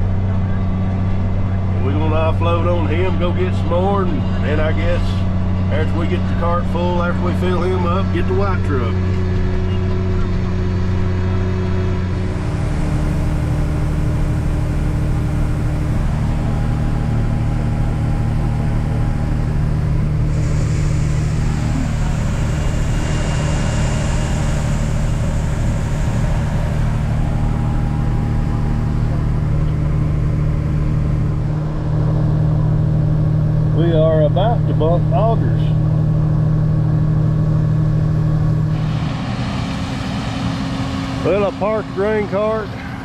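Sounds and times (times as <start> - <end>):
tractor diesel engine running: 0.0 - 43.0.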